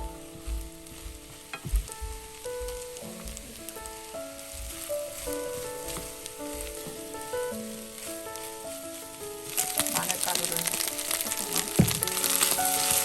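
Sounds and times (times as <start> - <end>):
background music: 0.0 - 13.0
food sizzling in a frying pan: 7.1 - 13.0.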